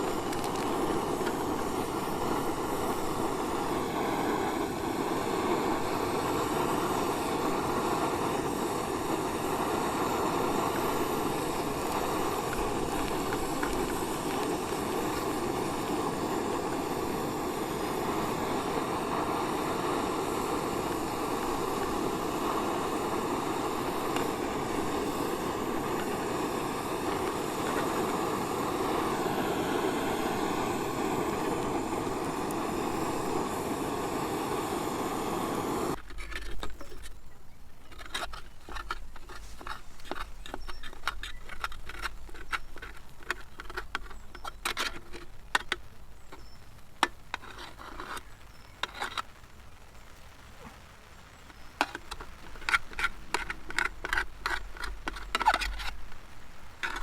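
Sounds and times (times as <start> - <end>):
camping stove burner hissing: 0.0 - 57.0
utensil scraping and tapping pan: 37.8 - 49.2, 51.8 - 56.0.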